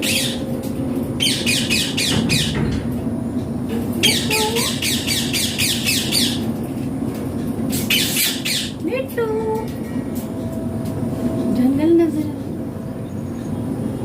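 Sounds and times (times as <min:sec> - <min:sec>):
parakeet screeching: 0:04.0 - 0:06.4, 0:07.9 - 0:08.8.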